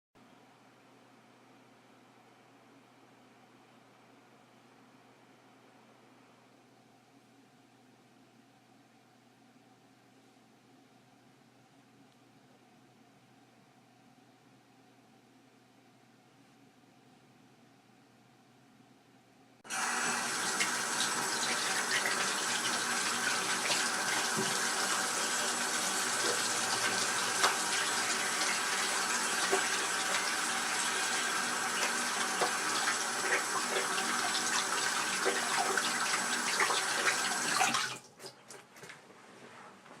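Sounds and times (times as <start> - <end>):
tap water running into sink: 19.7 - 38.4.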